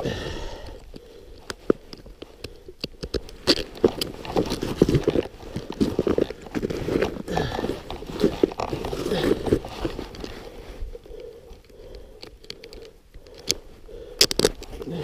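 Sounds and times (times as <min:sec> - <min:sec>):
snowshoes crunching in snow: 0:03.7 - 0:10.8.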